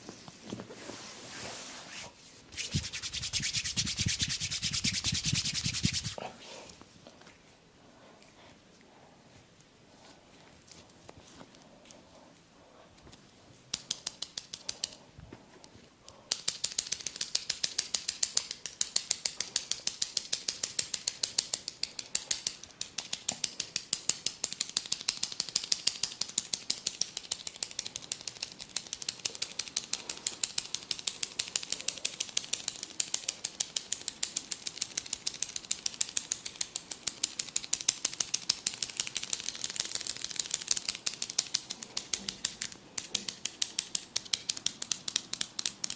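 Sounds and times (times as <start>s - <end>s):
crisp hand clicks on scalp: 2.6s - 6.2s, 13.7s - 15.0s, 16.3s - 45.9s.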